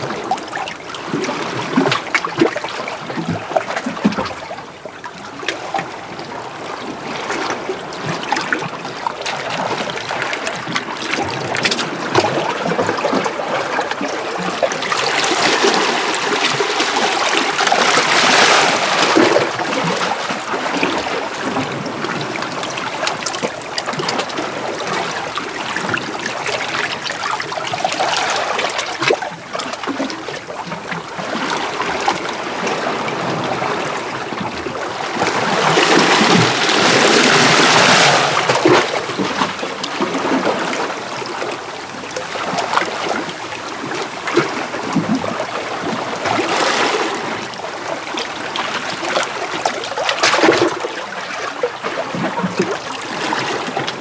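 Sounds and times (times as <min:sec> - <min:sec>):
small waves washing over rocks: 0:07.0 - 0:30.4, 0:31.1 - 0:54.0.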